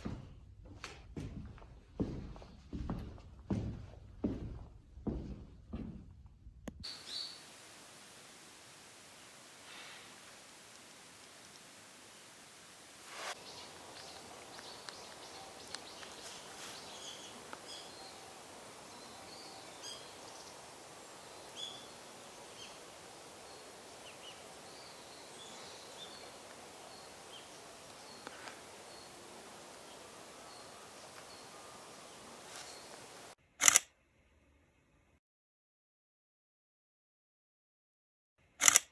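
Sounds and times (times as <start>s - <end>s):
woodland ambience: 0.0s - 33.8s
small birds chirping: 6.8s - 7.6s, 13.0s - 33.4s
sharp loud click: 33.6s - 33.8s, 38.6s - 38.9s.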